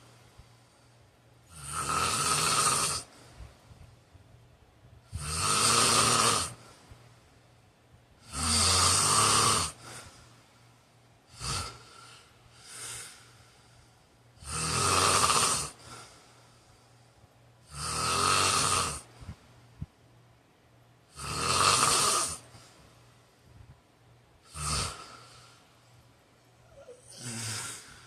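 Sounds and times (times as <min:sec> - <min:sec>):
soft breaths: 0:00.0 - 0:01.5, 0:03.0 - 0:05.2, 0:06.5 - 0:08.2, 0:09.7 - 0:14.4, 0:15.7 - 0:17.6, 0:19.0 - 0:20.0, 0:22.4 - 0:24.0, 0:24.8 - 0:28.0
man snoring: 0:01.5 - 0:03.1, 0:05.1 - 0:06.7, 0:08.2 - 0:10.1, 0:11.3 - 0:13.3, 0:14.4 - 0:16.1, 0:17.6 - 0:19.1, 0:21.1 - 0:22.5, 0:24.4 - 0:25.5, 0:26.7 - 0:28.0.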